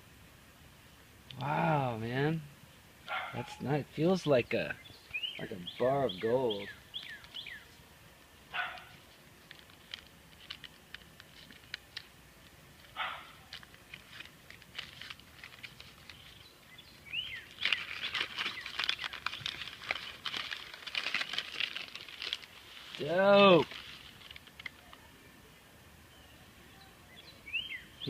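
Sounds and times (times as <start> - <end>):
wrapping crinkling: 8.5 - 16.6, 17.2 - 25.0.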